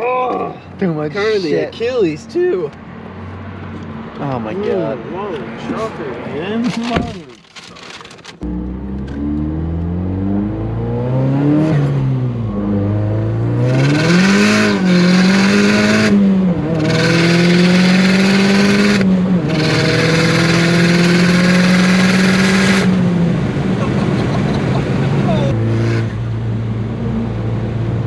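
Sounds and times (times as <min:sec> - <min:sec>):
car engine accelerating: 0:06.7 - 0:28.0.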